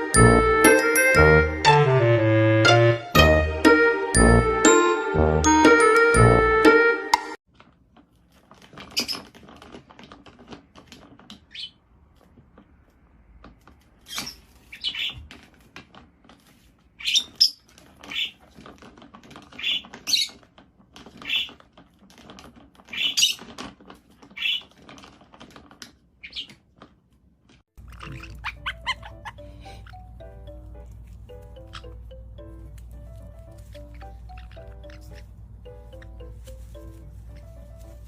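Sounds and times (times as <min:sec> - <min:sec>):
music: 0:00.0 - 0:07.4, 0:28.1 - 0:38.0
parrot squawking and chirping: 0:11.5 - 0:11.8, 0:14.0 - 0:15.2, 0:17.0 - 0:18.4, 0:19.5 - 0:20.4, 0:21.2 - 0:21.6, 0:22.9 - 0:23.4, 0:24.4 - 0:24.7, 0:26.2 - 0:26.6, 0:27.8 - 0:32.3, 0:32.9 - 0:38.0.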